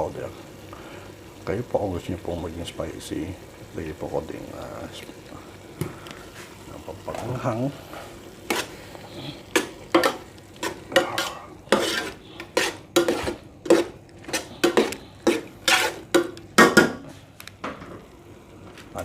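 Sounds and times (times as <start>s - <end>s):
faint sizzle: 0.0s - 19.0s
utensil scraping a pan: 8.0s - 17.1s.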